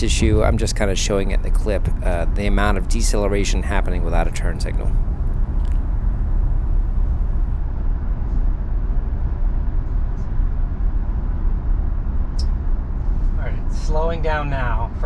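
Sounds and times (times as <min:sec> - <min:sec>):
tyre and road noise: 0:00.0 - 0:07.6.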